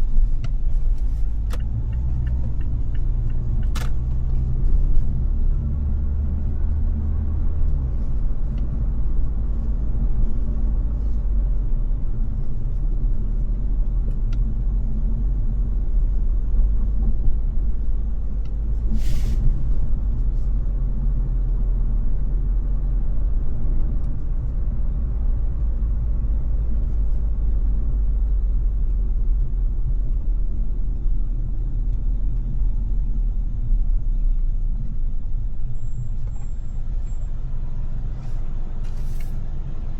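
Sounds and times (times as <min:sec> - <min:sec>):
car engine and road noise: 0:00.0 - 0:39.9
short sharp hiss: 0:18.9 - 0:19.6.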